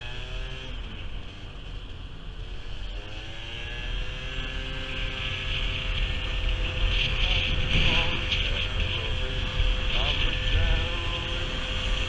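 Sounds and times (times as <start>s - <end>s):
scooter engine revving: 2.4s - 12.0s.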